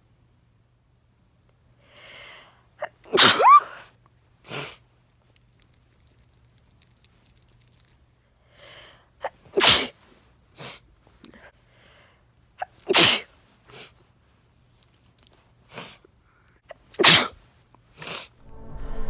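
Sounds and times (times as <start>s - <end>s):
person sneezing: 2.8s - 3.9s, 9.2s - 10.0s, 12.6s - 13.9s, 17.0s - 17.4s.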